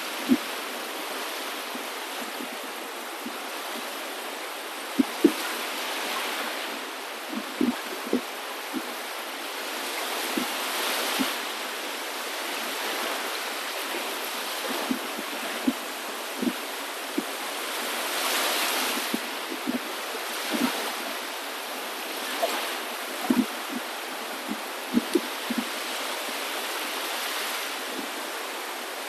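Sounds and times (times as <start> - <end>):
water washing in swells: 0.0 - 29.0
water plops and gurgles: 4.9 - 5.6, 7.2 - 8.9, 13.8 - 17.4, 18.2 - 21.2, 22.3 - 25.8.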